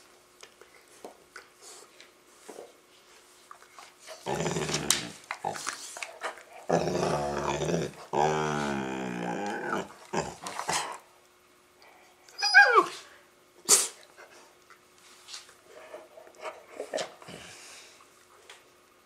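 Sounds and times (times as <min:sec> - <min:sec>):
dogs play growling and grunting: 0:04.0 - 0:11.1
dog whining: 0:12.3 - 0:13.1.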